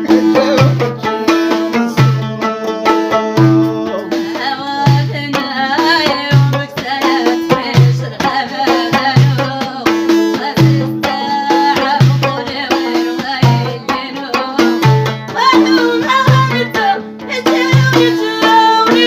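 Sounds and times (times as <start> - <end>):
low drum beat: 0.0 - 13.9
plucked string instruments: 0.0 - 19.0.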